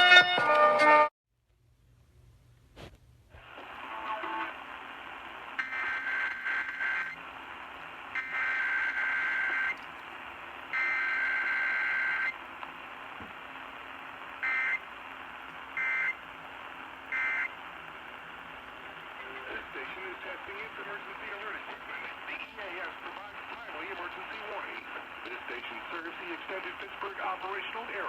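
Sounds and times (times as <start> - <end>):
radio hiss: 3.3 - 28.0
radio data bursts: 3.4 - 28.0.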